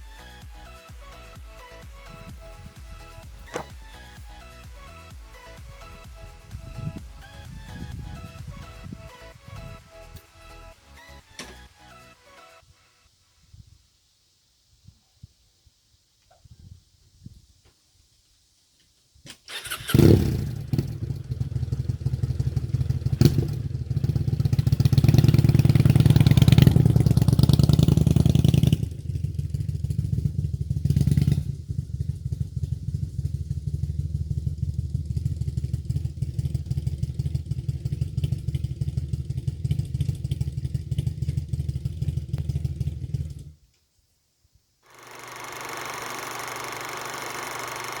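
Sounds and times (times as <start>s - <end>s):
motorcycle engine running: 1.3s - 10.8s, 19.6s - 43.6s, 44.9s - 48.0s
steady sound with held tones: 44.9s - 48.0s.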